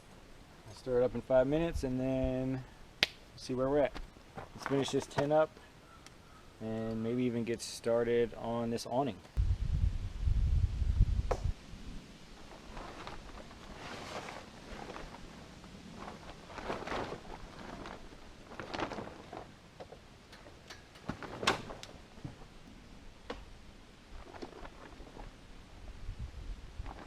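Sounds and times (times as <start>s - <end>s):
camp gear rustling: 3.7s - 6.4s, 12.3s - 26.0s, 26.7s - 27.0s.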